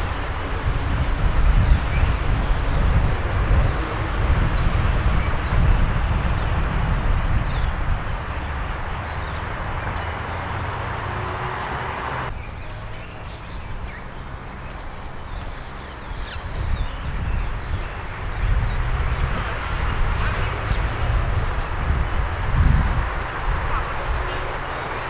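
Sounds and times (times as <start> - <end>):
low rumble: 0.0 - 12.3
birds chirping: 0.0 - 25.0.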